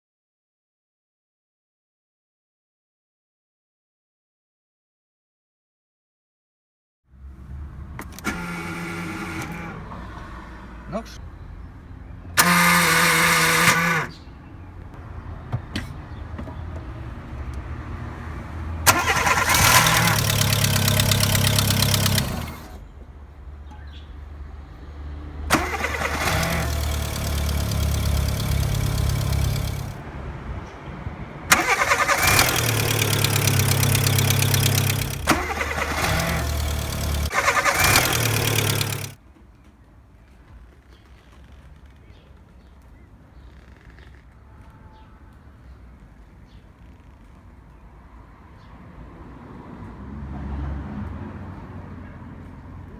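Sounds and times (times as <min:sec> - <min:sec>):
starter motor cranking: 0:07.9 - 0:10.2, 0:12.4 - 0:14.3, 0:18.9 - 0:22.8, 0:25.5 - 0:30.0, 0:31.5 - 0:39.2
starter solenoid click: 0:08.0 - 0:09.9, 0:12.4 - 0:14.2, 0:18.9 - 0:22.8, 0:25.5 - 0:30.0, 0:31.5 - 0:39.2.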